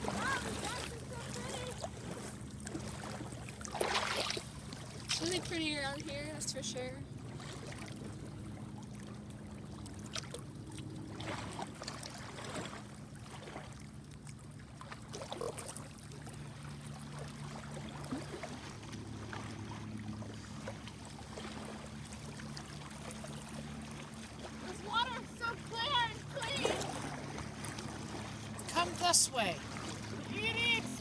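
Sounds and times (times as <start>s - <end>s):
boat engine drone: 0.0s - 31.0s.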